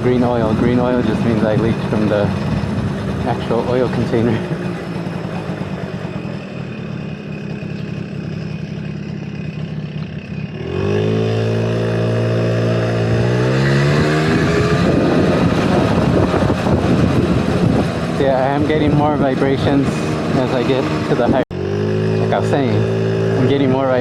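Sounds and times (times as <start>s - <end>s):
two-stroke scooter engine revving: 0.0s - 24.0s.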